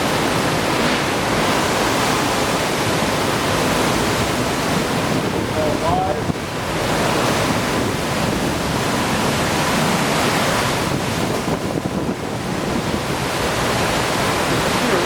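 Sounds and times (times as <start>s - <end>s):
strong wind and rain: 0.0s - 15.0s
wind buffeting microphone: 0.0s - 15.0s.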